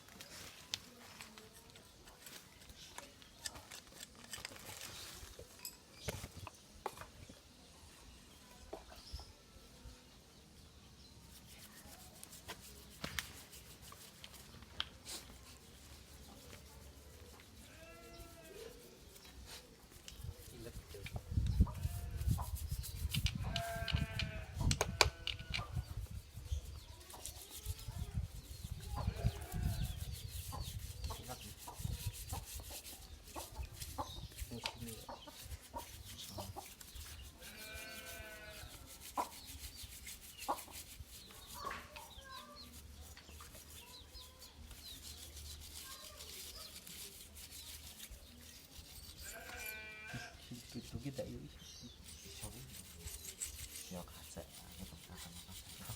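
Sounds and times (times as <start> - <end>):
farm animals calling: 37.4 - 38.8.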